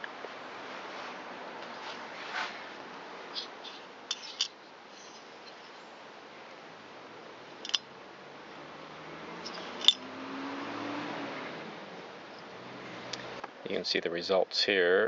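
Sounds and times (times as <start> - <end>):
metal engine parts clinking: 4.1 - 4.6, 7.6 - 7.9, 9.4 - 10.0.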